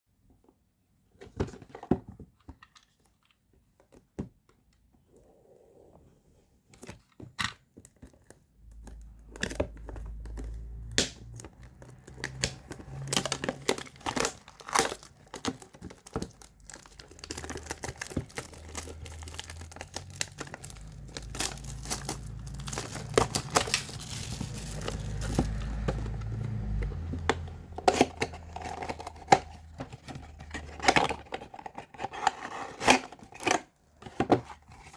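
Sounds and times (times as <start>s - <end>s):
packaging clicks and taps: 6.8s - 34.9s
packaging crinkling and tearing: 8.0s - 27.2s
low handling rumble: 16.4s - 29.2s.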